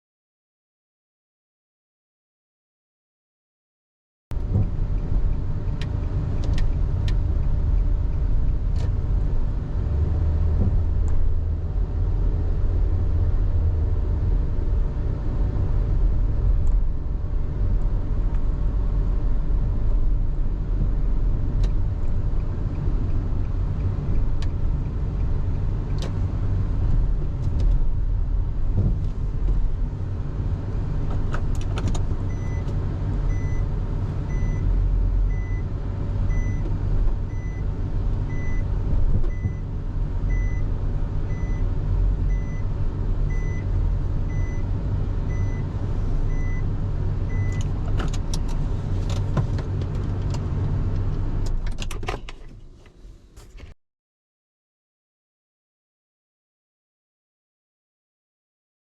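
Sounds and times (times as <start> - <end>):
car engine rumble: 4.3 - 53.8
road noise: 4.3 - 53.8.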